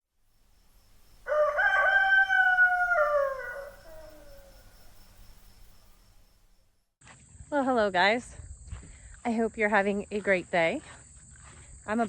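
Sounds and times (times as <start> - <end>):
animal howling: 1.3 - 4.8.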